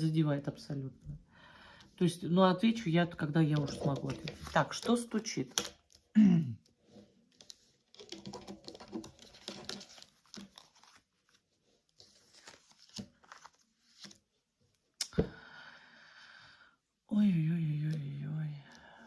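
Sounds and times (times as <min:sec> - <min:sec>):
cards shuffling and rustling: 0:03.5 - 0:06.1, 0:07.0 - 0:14.3.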